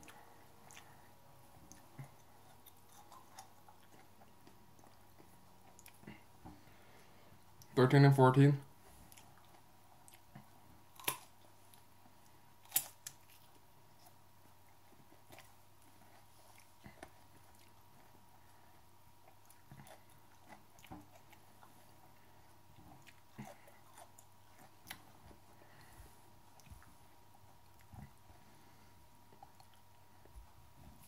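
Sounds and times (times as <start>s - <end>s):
chewing crunches and clicks: 0.0s - 1.0s, 1.6s - 6.3s, 9.1s - 18.6s, 19.2s - 25.9s, 27.5s - 28.2s, 29.3s - 30.0s
person chewing: 0.0s - 7.7s, 9.0s - 31.0s.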